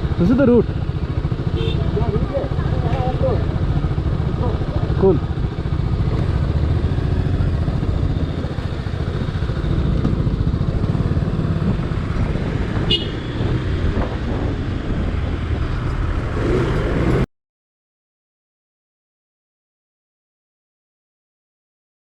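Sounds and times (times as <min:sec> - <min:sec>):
motorcycle engine rumbling: 0:00.0 - 0:17.3.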